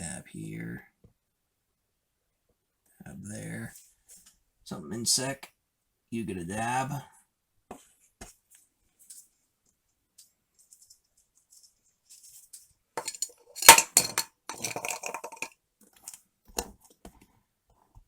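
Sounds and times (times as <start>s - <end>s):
small hard parts clinking: 13.0s - 16.7s.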